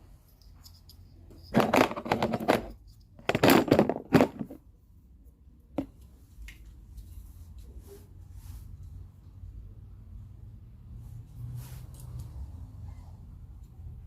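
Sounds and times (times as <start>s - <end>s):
equipment parts clattering: 0.6s - 4.6s.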